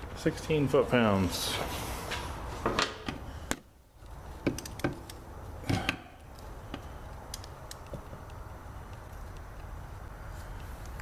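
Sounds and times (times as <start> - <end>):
hand tools clicking and knocking: 4.4 - 9.0.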